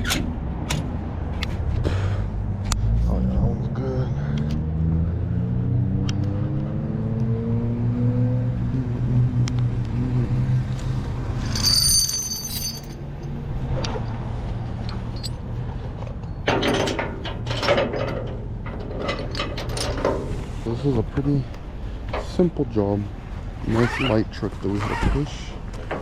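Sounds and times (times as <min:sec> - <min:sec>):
metallic clicks and knocks: 0:14.8 - 0:20.3.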